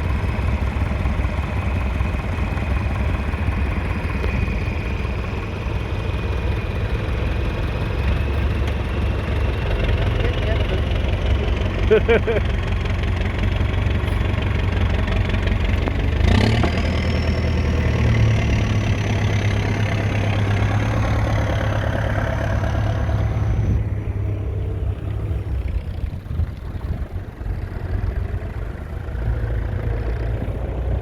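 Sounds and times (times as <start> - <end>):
diesel tractor engine running: 0.0 - 31.0.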